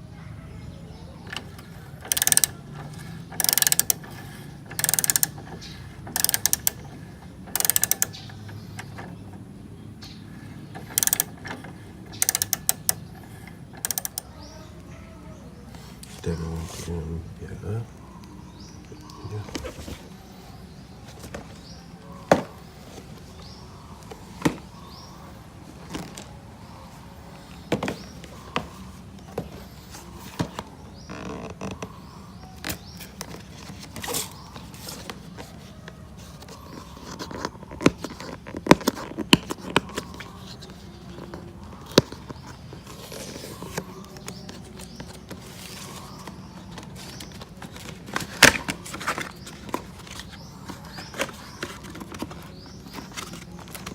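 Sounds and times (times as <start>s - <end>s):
wrench and metal parts clinking: 2.0s - 2.6s, 3.3s - 4.0s, 12.2s - 13.0s.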